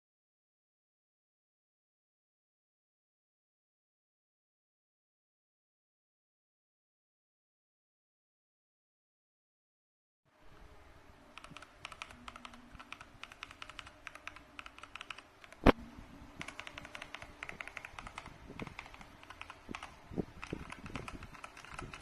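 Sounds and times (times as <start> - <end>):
mechanical keyboard key clicks: 11.4 - 15.8, 16.4 - 22.0.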